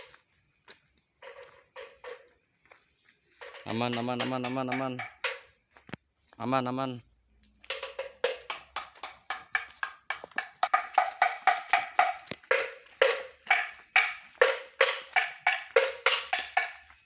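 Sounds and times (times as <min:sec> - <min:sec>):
wooden slit drum knocks: 0:03.4 - 0:05.4.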